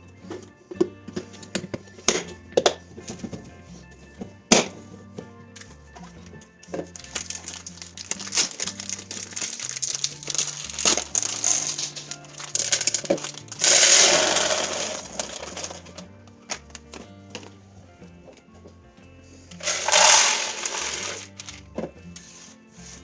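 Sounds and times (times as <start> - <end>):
background music: 0.0 - 23.0
containers clicking and clattering: 6.7 - 16.7, 19.6 - 21.9
dry goods poured into container: 6.8 - 16.1, 19.6 - 21.7.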